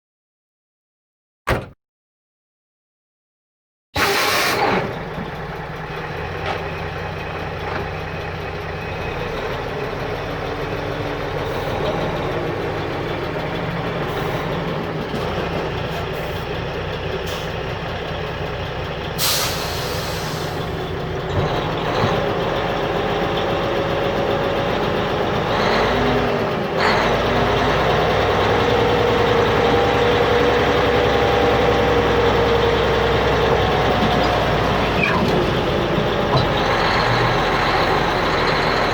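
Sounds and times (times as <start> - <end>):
hydraulic tipper whine: 4.0 - 16.4, 19.2 - 38.9
diesel truck engine running: 4.0 - 38.9
air brake hiss: 19.2 - 20.7.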